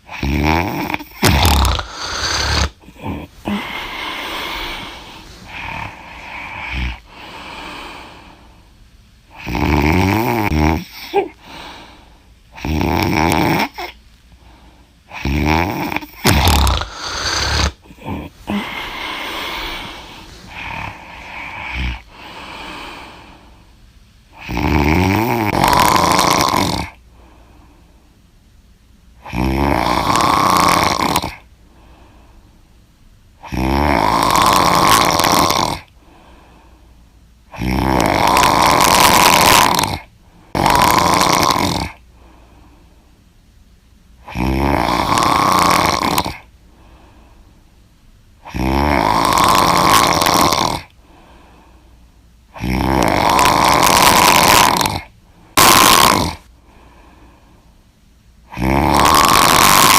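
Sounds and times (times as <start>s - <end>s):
person snoring loudly: 0.0s - 8.1s, 9.3s - 11.7s, 12.6s - 14.0s, 15.1s - 23.1s, 24.4s - 27.0s, 29.2s - 31.5s, 33.4s - 35.9s, 37.5s - 42.0s, 44.2s - 46.5s, 48.4s - 50.9s, 52.5s - 56.5s, 58.5s - 59.9s.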